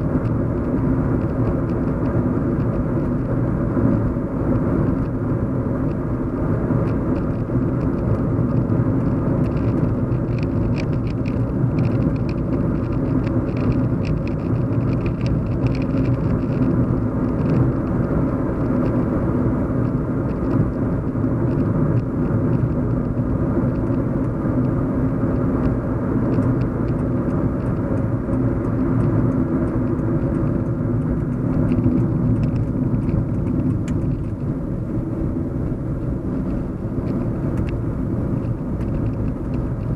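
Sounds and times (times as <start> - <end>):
car interior road and engine hum: 0.0 - 39.9
faint light ticks: 25.6 - 34.5, 36.5 - 37.8.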